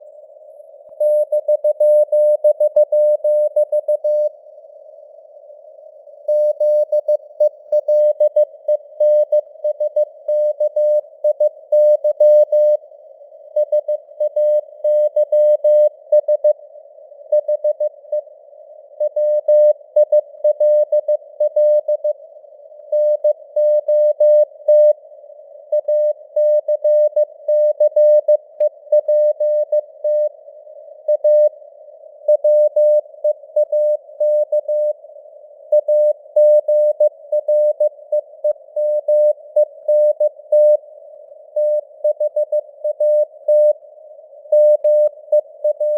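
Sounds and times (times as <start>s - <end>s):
morse code beeps: 44.6s - 45.9s.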